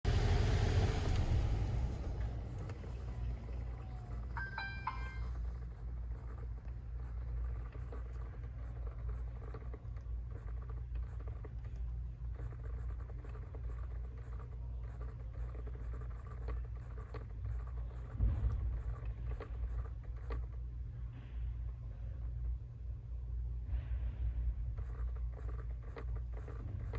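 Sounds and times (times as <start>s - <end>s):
steady low rumble: 0.0s - 4.5s, 5.1s - 26.9s
electronic chime: 4.3s - 5.4s.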